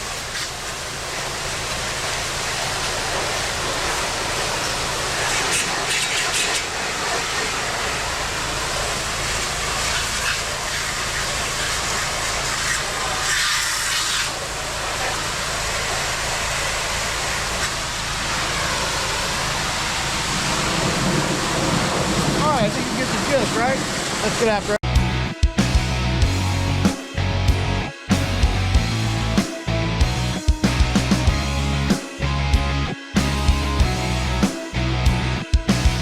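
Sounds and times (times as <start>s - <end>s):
pressure washer spray hissing: 0.0s - 24.8s
pressure washer machine hum: 0.0s - 36.0s.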